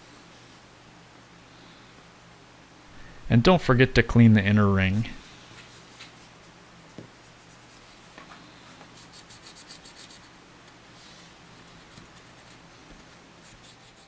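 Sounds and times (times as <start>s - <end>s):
faint low hum: 2.7s - 5.5s.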